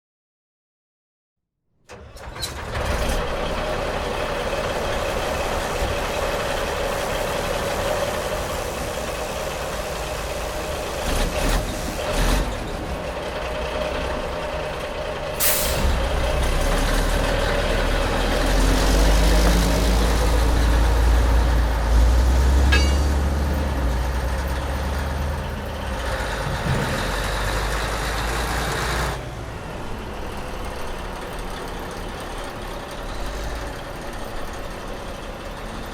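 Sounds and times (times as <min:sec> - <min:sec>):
heavy machinery droning: 0:13.1 - 0:35.7
deep low rumble: 0:25.9 - 0:28.5.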